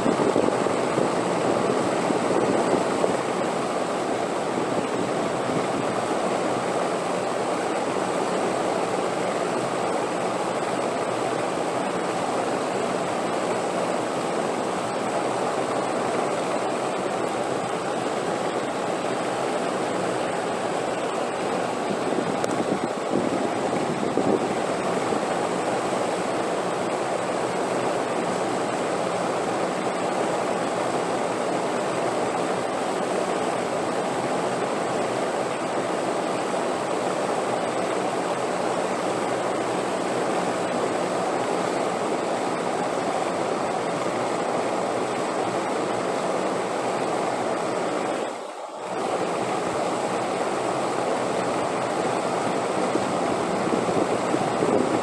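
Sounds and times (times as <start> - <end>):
steady wind rushing: 19.8 - 26.1, 52.5 - 55.0.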